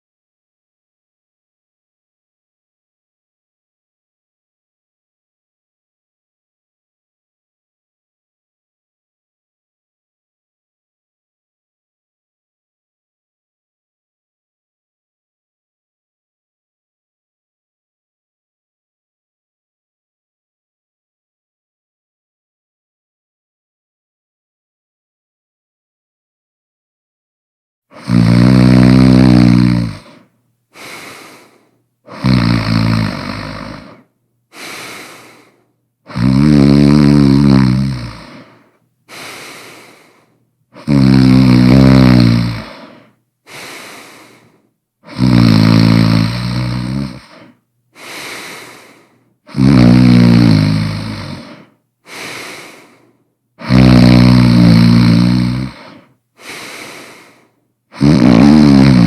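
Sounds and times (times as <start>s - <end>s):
person snoring loudly: 27.9s - 30.2s, 30.8s - 53.0s, 53.6s - 59.0s
quiet breath: 29.6s - 32.2s, 33.1s - 36.1s, 38.0s - 40.9s, 42.5s - 45.2s, 47.1s - 49.6s, 51.2s - 53.7s, 55.6s - 58.0s.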